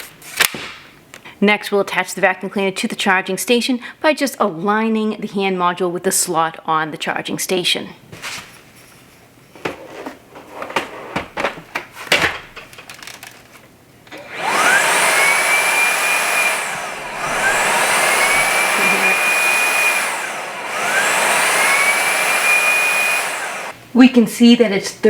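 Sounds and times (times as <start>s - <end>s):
suction motor whining: 14.1s - 23.8s.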